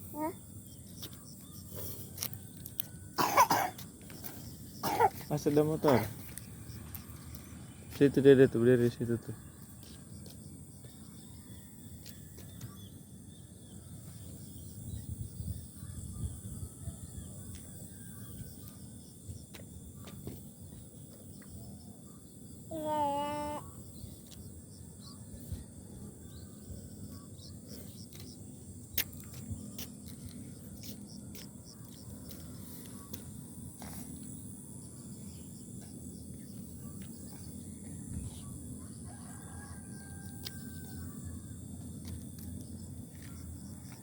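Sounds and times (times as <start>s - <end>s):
high insect drone: 0.0s - 44.0s
small ticks: 2.2s - 2.9s, 28.1s - 34.4s, 40.0s - 41.0s
distant rooster crow: 38.8s - 41.3s.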